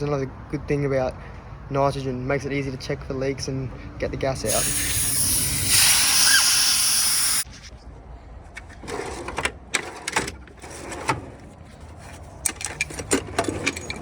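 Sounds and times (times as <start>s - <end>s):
pressurised gas hissing: 4.5s - 7.4s.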